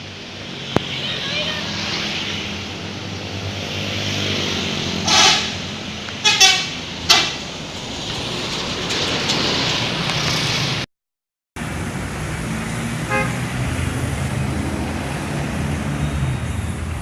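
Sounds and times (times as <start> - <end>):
road noise: 0.0 - 10.9, 11.6 - 17.0
multi-tone horn blasts: 5.0 - 5.6, 6.2 - 7.3, 13.1 - 13.5.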